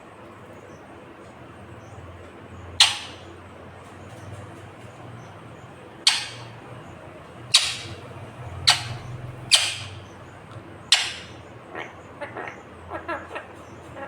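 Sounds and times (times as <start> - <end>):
parakeet screeching: 2.8 - 3.3, 6.0 - 6.6, 7.5 - 10.2, 10.9 - 11.4.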